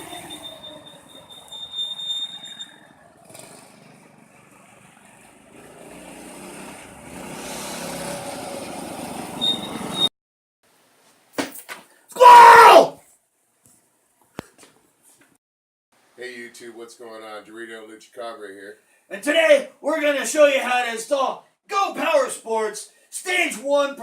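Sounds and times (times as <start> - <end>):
go-kart engine running: 3.0 - 10.0.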